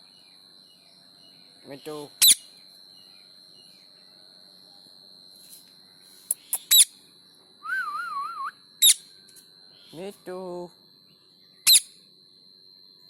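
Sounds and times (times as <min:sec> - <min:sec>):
warbling whistle: 0:07.6 - 0:08.6
parrot screech: 0:11.7 - 0:11.9.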